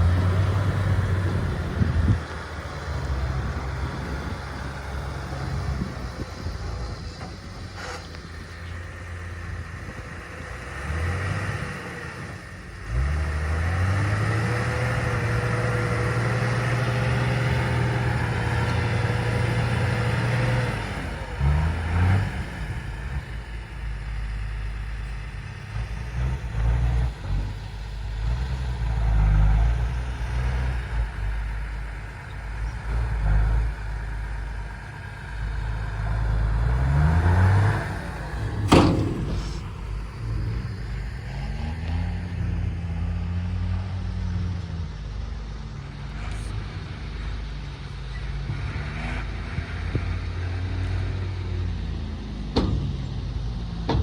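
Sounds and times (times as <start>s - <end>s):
diesel engine of digging machinery: 0.0s - 54.0s
sharp knock: 38.6s - 39.7s.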